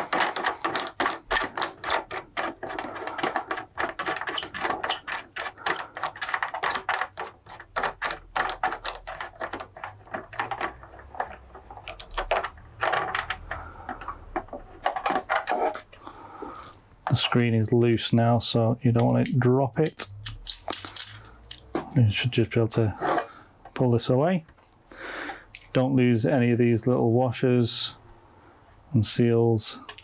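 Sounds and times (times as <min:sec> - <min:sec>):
hand tool clicking: 0:19.0 - 0:21.7.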